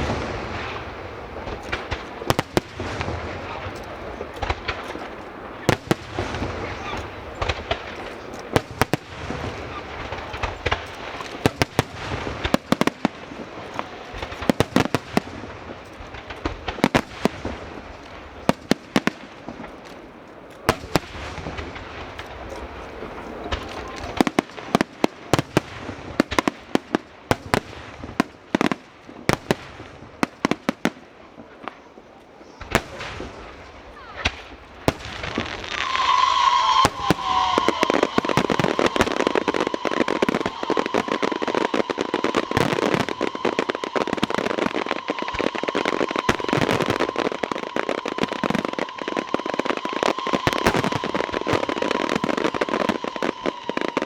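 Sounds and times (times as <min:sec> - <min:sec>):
fireworks bangs and crackling: 0:00.0 - 0:54.0
high whistling tone: 0:35.7 - 0:44.1.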